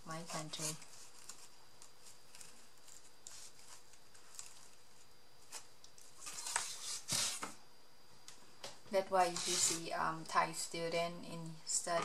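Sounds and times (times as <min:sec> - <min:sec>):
paper clicks and rustles: 0:00.3 - 0:07.5.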